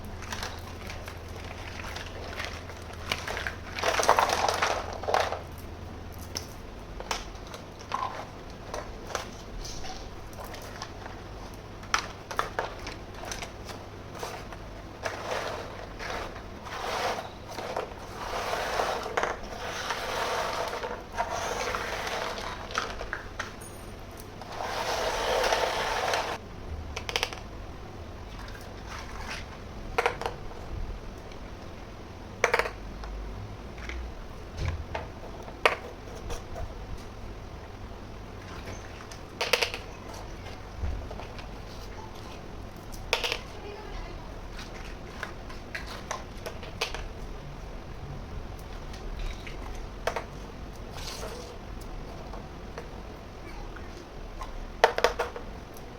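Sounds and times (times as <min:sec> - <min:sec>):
plastic toy pieces clicking: 0:27.0 - 0:27.4, 0:39.4 - 0:39.9, 0:43.0 - 0:43.5.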